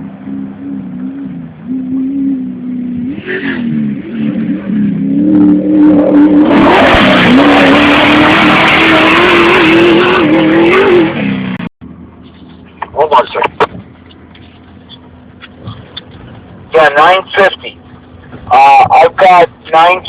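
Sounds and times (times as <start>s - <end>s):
truck engine revving: 0.0s - 11.7s.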